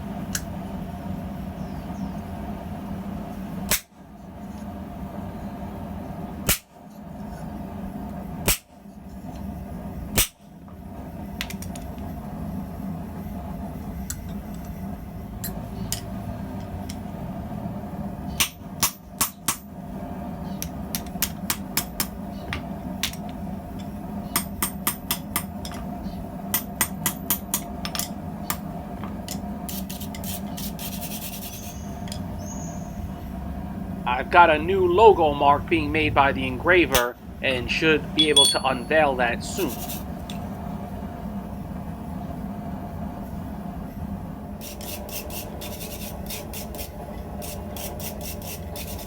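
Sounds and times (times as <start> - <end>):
hammer striking steel: 38.2 - 39.1.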